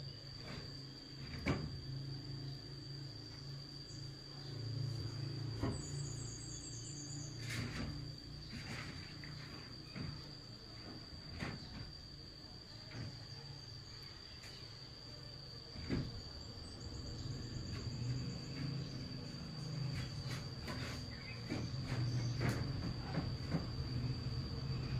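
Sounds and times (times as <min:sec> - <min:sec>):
insects trilling: 0:00.0 - 0:24.9
light knocks and rustles: 0:07.3 - 0:13.6, 0:15.7 - 0:16.3, 0:17.6 - 0:24.1.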